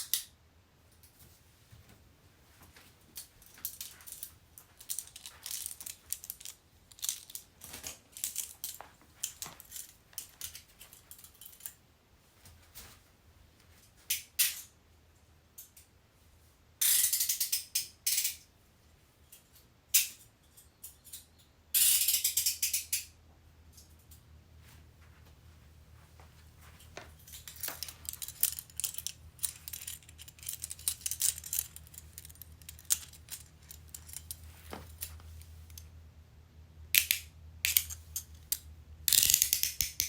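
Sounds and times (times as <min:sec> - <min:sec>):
fast handcuff ratcheting: 0:03.6 - 0:11.7, 0:27.3 - 0:35.8, 0:37.0 - 0:40.0
handcuff ratchet clicking: 0:27.5 - 0:34.4, 0:37.0 - 0:40.0.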